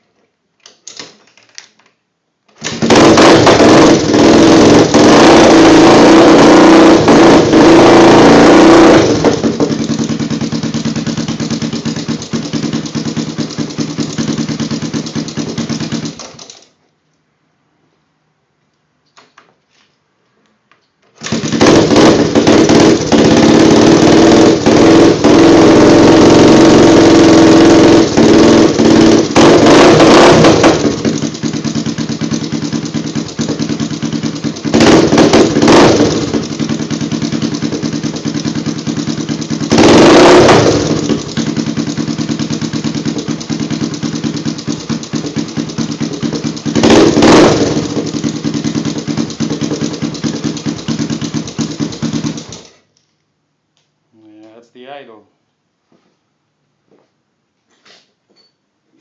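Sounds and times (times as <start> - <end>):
engine revving and idling: 2.6 - 16.1, 21.2 - 52.6.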